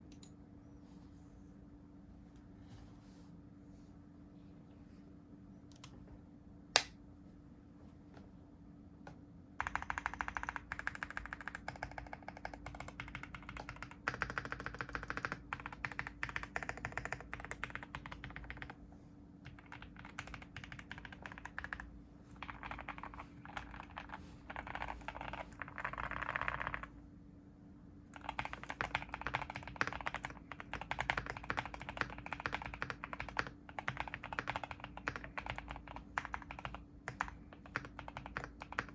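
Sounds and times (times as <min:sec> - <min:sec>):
mechanical keyboard typing: 0:09.6 - 0:18.8, 0:19.4 - 0:26.9, 0:28.2 - 0:38.9.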